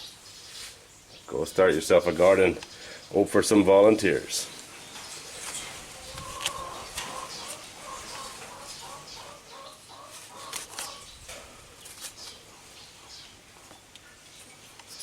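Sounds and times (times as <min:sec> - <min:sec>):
chickens clucking: 0:04.3 - 0:11.6.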